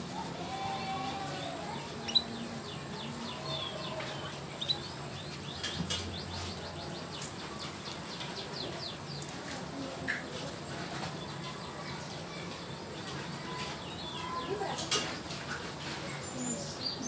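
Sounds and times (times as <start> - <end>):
canary chirping: 2.0 - 2.4.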